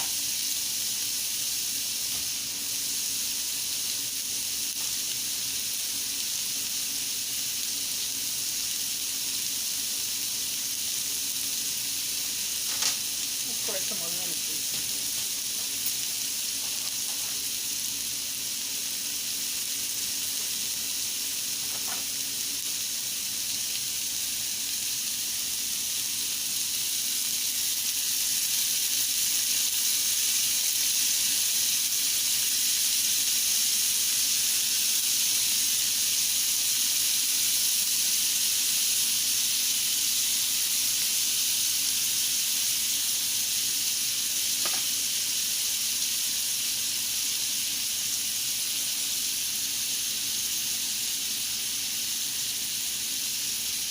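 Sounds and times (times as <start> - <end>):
chicken sizzling in a pan: 0.0 - 53.9.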